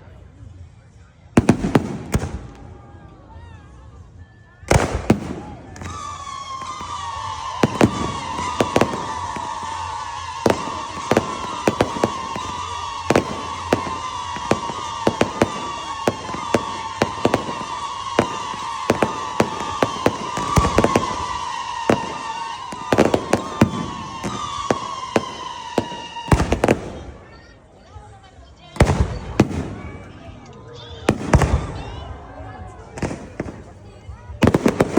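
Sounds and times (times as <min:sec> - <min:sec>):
fireworks bangs: 0:01.4 - 0:03.5, 0:04.7 - 0:27.7, 0:28.6 - 0:34.9
high descending whistle: 0:05.7 - 0:26.7.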